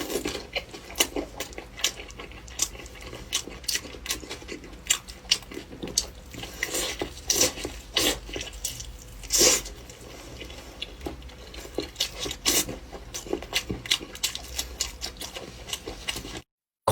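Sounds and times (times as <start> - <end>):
wet chewing and mouth smacks: 0.0 - 16.4.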